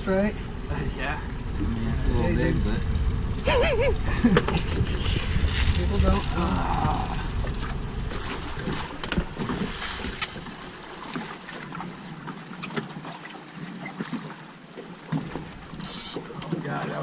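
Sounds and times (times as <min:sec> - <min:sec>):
water lapping against hull: 0:00.0 - 0:17.0
wind rumble on microphone: 0:01.3 - 0:10.8.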